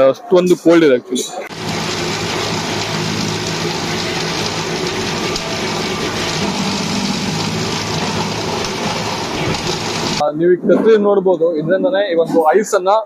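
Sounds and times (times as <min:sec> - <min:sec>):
machinery hiss: 0:01.5 - 0:10.2
machinery low hum: 0:01.5 - 0:10.2.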